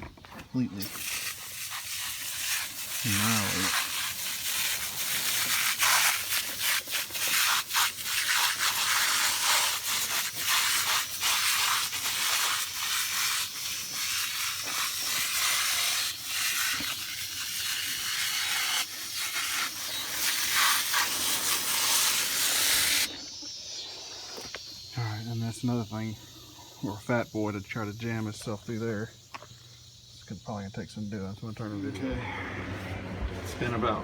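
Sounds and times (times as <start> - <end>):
aerosol can spraying hiss: 0.8 - 23.1.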